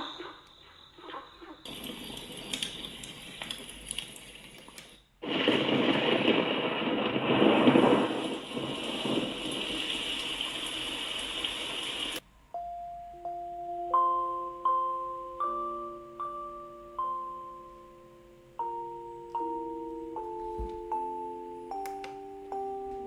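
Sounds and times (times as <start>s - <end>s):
running water through small speaker: 0.0s - 5.0s, 7.8s - 12.2s.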